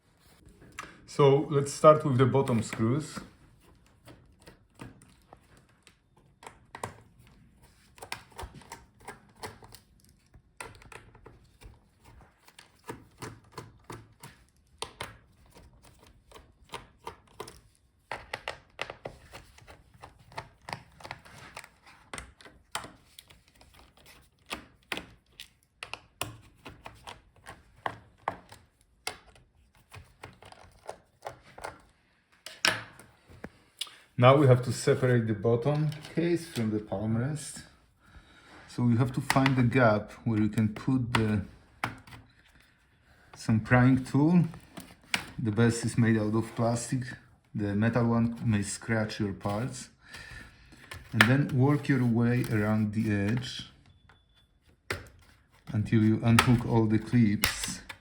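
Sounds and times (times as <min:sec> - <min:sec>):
laptop handling noise: 0:02.1 - 0:36.9, 0:39.0 - 0:47.1, 0:49.4 - 0:58.0.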